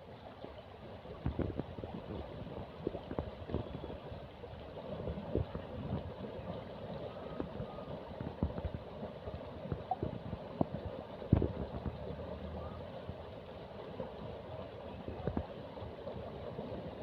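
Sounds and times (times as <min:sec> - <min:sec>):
river water gurgling: 0:00.0 - 0:17.0
small splashes and knocks: 0:01.2 - 0:04.0, 0:09.7 - 0:13.3, 0:15.1 - 0:15.6.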